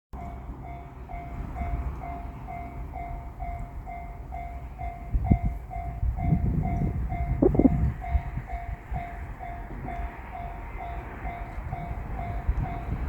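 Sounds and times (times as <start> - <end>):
railroad crossing alarm clanging: 0.2 - 13.0
train rumbling: 0.2 - 13.0.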